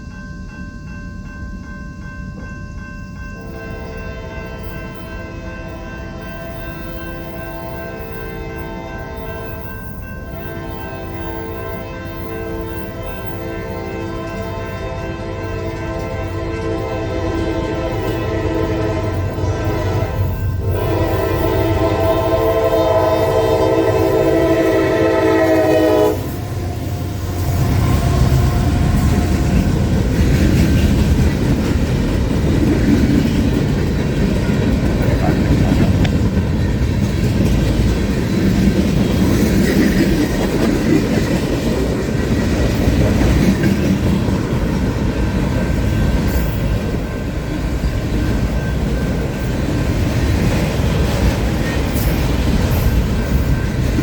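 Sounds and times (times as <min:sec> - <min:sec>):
train cars rumbling on rails: 0:02.0 - 0:54.0
locomotive horn blast: 0:10.4 - 0:30.0.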